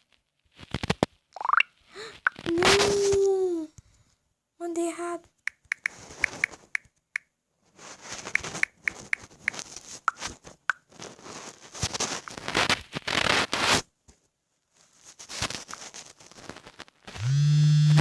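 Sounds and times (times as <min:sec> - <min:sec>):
phone taps and clicks: 0:08.3 - 0:10.8.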